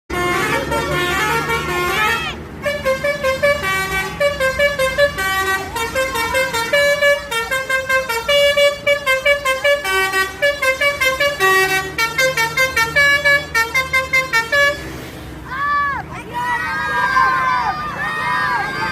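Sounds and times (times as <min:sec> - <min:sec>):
musical bus horn playing a tune: 0:00.1 - 0:15.0.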